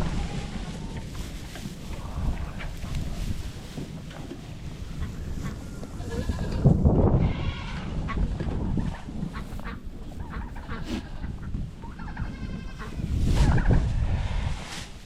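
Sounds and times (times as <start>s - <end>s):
steady low rumble: 0.0s - 11.9s
goat bleating: 6.0s - 7.9s, 12.0s - 13.0s.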